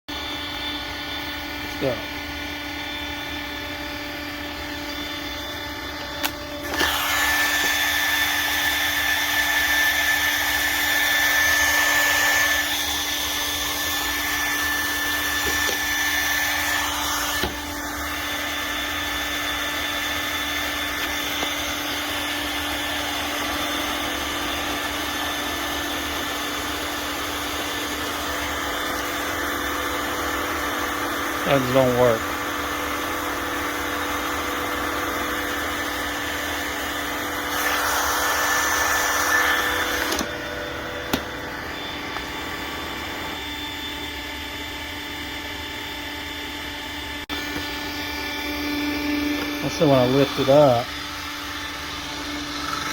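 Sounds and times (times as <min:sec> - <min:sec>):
robot vacuum motor hum: 0:00.2 - 0:52.9
vacuum click: 0:05.8 - 0:07.8, 0:39.6 - 0:42.6.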